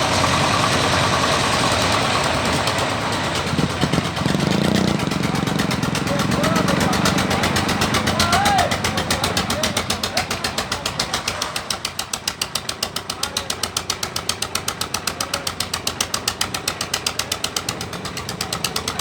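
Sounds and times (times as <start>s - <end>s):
concrete mixer chugging: 0.0s - 19.0s.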